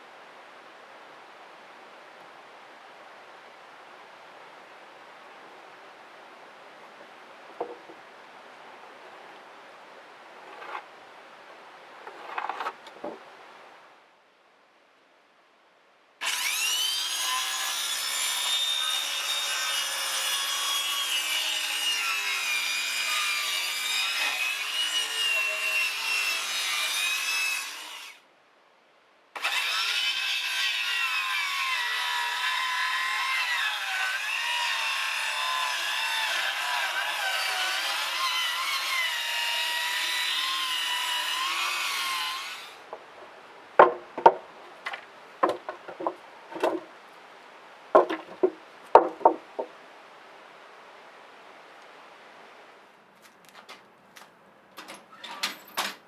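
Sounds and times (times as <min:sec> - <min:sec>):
power saw cutting wood: 0:16.2 - 0:28.2, 0:29.4 - 0:42.9.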